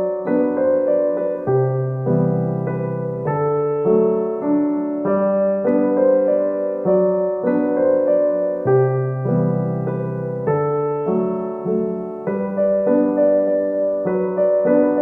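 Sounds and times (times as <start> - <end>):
gentle piano chords: 0.0 - 15.0.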